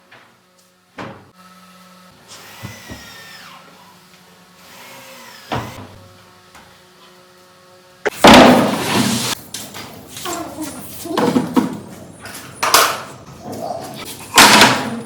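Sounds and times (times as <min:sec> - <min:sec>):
power tool motor whining: 0:01.5 - 0:05.9.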